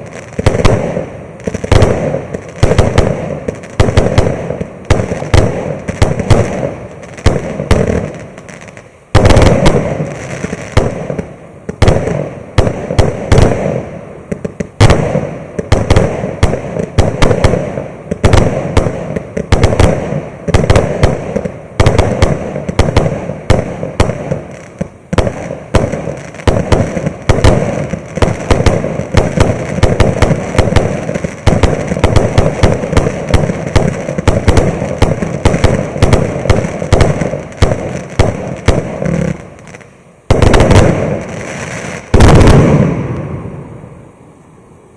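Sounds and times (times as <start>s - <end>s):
fireworks volley with crackle: 0.0s - 44.9s
loud firework bang: 42.1s - 43.5s.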